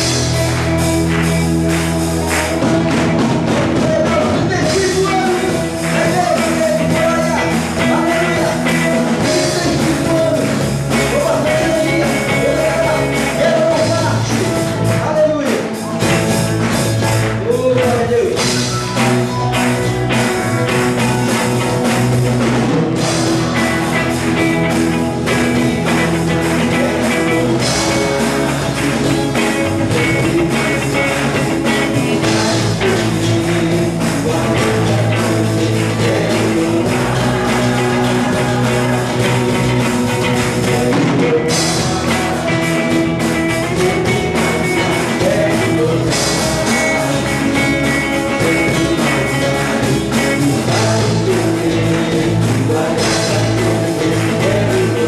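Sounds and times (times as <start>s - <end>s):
guitar: 0.0s - 55.0s
worship band music: 0.0s - 55.0s
person singing: 3.1s - 16.0s, 20.6s - 55.0s.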